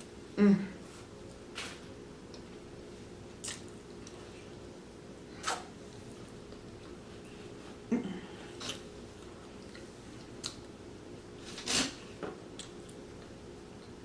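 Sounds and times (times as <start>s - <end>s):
faint steady hum: 0.0s - 14.0s
person chewing: 3.4s - 4.6s, 8.3s - 10.7s.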